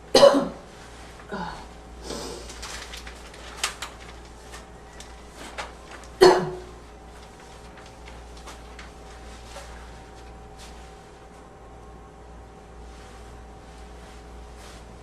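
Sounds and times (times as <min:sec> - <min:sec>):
person barking cough: 0:00.1 - 0:00.6, 0:06.2 - 0:06.7.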